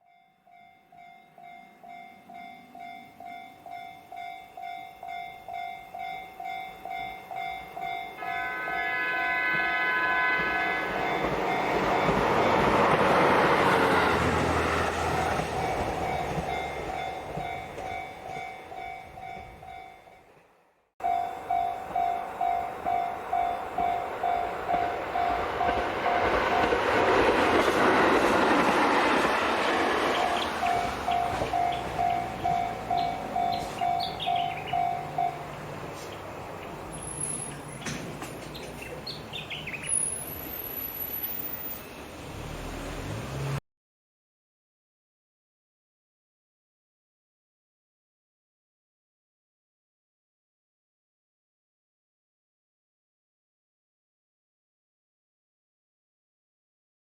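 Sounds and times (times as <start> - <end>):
level-crossing warning bell: 0.0 - 20.4, 21.0 - 41.9
train engine and wheel noise: 0.0 - 43.6
train horn: 8.1 - 15.5.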